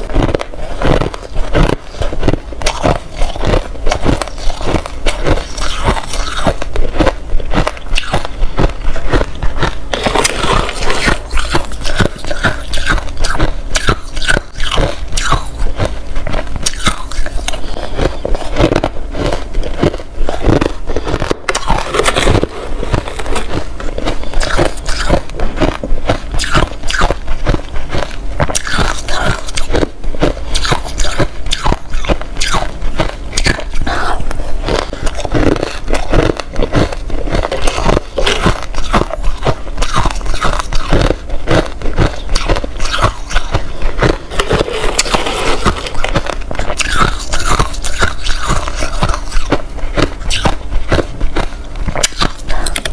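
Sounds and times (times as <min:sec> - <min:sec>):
ice crunching while chewed: 0:00.0 - 0:52.9.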